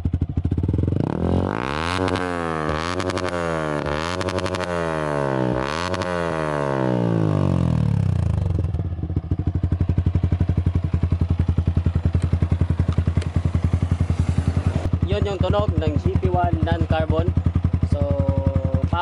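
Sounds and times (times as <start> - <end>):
motorcycle engine idling: 0.0 - 19.0
motorcycle engine revving: 0.0 - 19.0.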